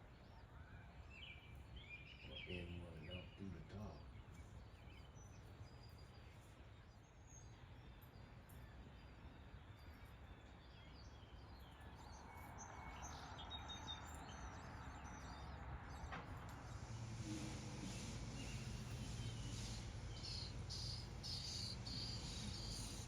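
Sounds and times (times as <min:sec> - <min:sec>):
bird chirps: 0:00.0 - 0:23.0
outdoor background noise: 0:00.0 - 0:23.0
soft hiss: 0:16.2 - 0:23.0.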